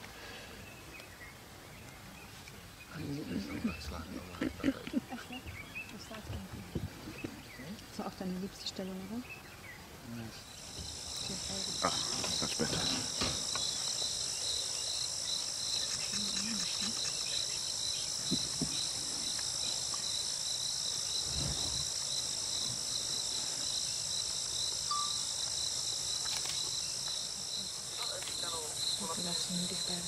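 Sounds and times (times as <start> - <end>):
insect chorus chirring: 7.5 - 30.0.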